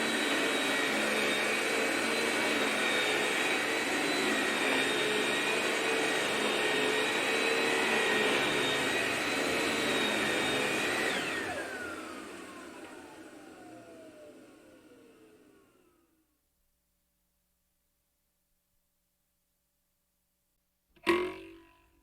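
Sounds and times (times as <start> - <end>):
vacuum cleaner whining: 0.0 - 16.2.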